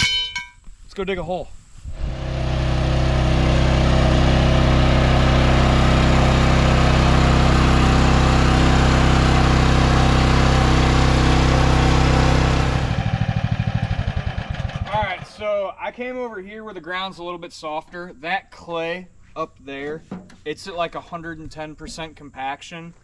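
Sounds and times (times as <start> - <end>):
excavator engine running: 2.0 - 15.5.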